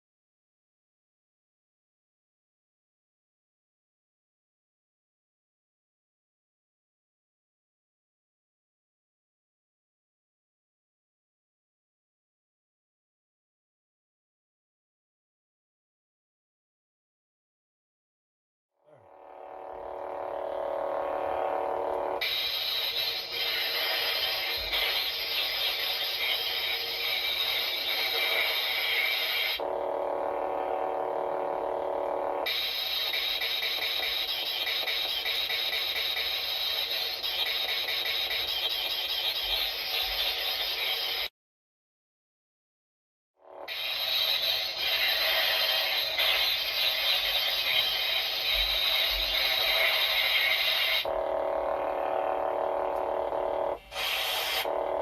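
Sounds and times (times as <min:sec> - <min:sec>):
lightsaber buzzing hum: 0:19.0 - 0:41.2, 0:43.5 - 0:55.0.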